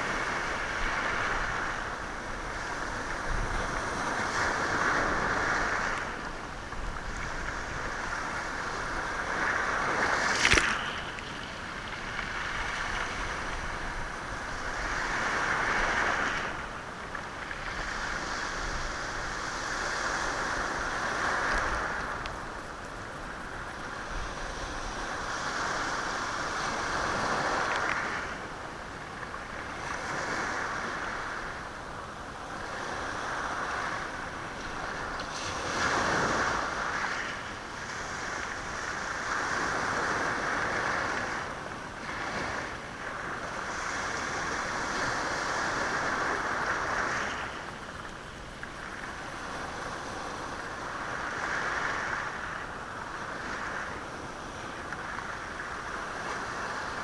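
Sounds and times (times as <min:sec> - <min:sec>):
sea waves on a stony shore: 0:00.0 - 0:57.0
stones rattling in surf: 0:10.0 - 0:11.2.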